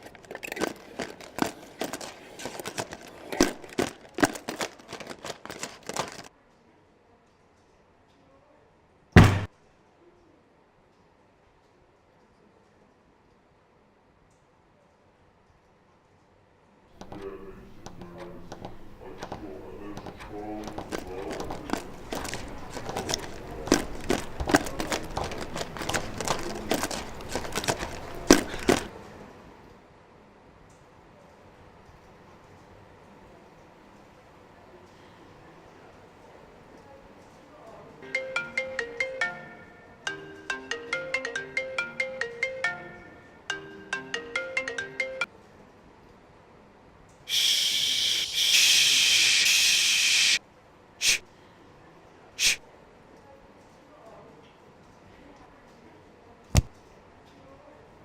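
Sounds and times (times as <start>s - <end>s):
objects being handled: 0.0s - 6.3s, 17.8s - 29.0s
shushing hiss: 47.3s - 50.4s, 51.0s - 51.3s, 52.4s - 52.7s.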